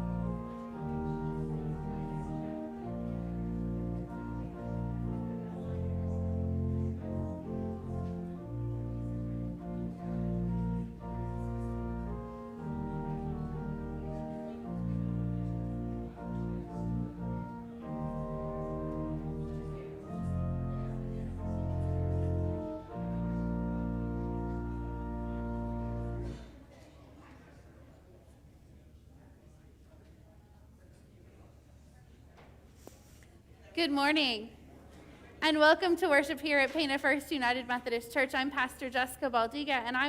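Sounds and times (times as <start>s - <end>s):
slow instrumental music: 0.0s - 26.6s.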